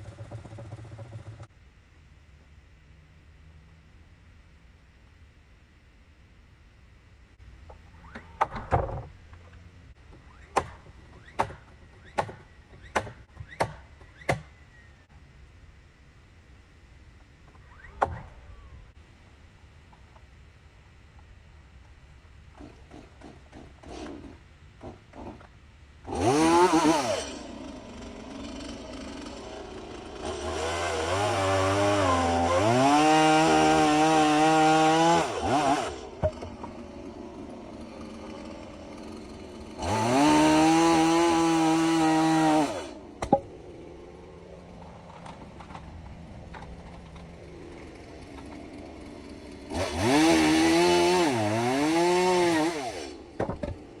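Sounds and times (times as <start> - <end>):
chainsaw revving and idling: 0.0 - 1.5, 26.0 - 54.0.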